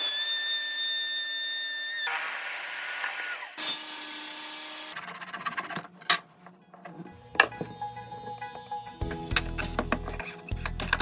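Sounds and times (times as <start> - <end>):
power tool cutting: 0.0 - 5.0.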